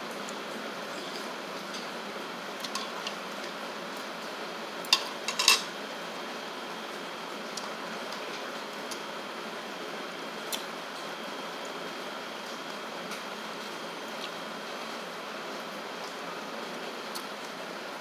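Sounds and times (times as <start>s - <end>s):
utensils clinking against dishes: 4.9s - 5.7s.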